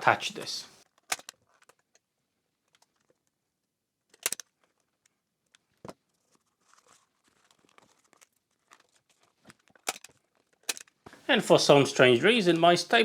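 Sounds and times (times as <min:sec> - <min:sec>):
plastic strip rustling: 0:04.1 - 0:11.0.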